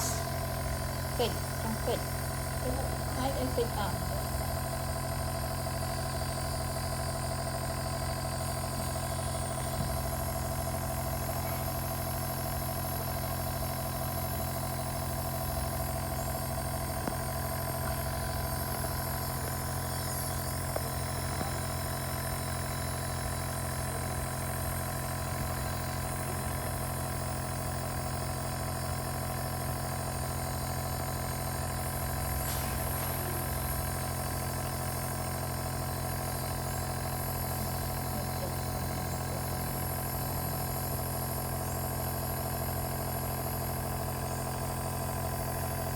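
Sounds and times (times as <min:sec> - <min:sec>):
nebulizer humming: 0:00.0 - 0:45.9.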